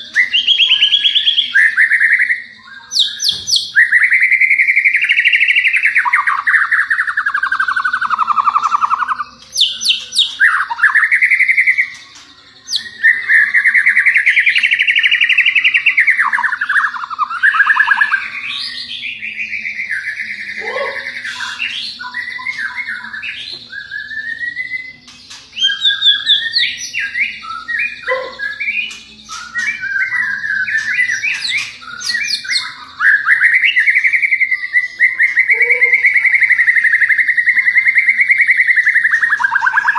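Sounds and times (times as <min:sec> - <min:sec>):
bird chips and whistles: 0:00.0 - 0:39.9
songbird warbling: 0:38.8 - 0:39.9.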